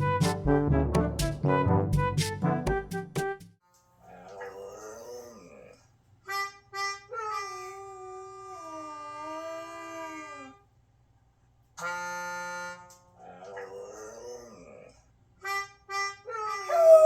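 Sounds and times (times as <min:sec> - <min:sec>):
melodica notes: 0:11.8 - 0:13.0
husky howling: 0:16.7 - 0:17.0.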